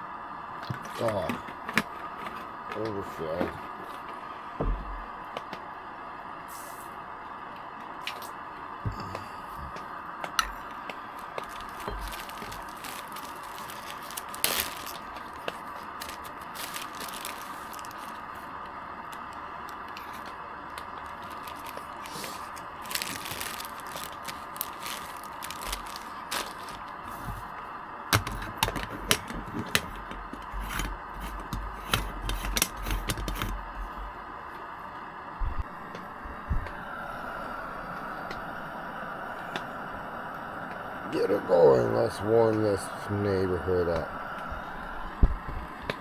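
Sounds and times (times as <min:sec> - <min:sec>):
steady hiss: 0:00.0 - 0:28.2
hands scraping and tearing material: 0:11.2 - 0:18.4, 0:19.2 - 0:27.4.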